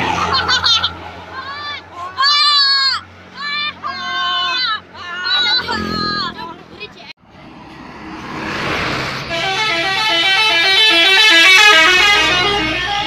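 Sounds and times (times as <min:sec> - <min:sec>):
bus approaching: 0:00.0 - 0:13.0
tuned air horn melody: 0:09.3 - 0:13.0.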